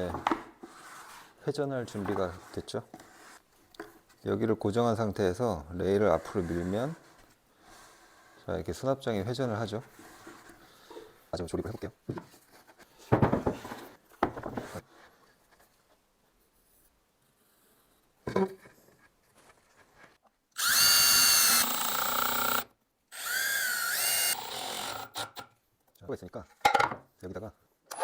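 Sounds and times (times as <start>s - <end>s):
cordless drill driving screws: 20.6s - 25.5s.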